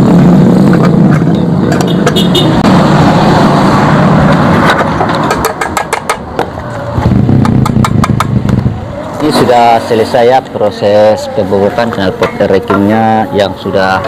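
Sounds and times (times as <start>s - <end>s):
sharp exhaust cracks: 0.0s - 10.4s.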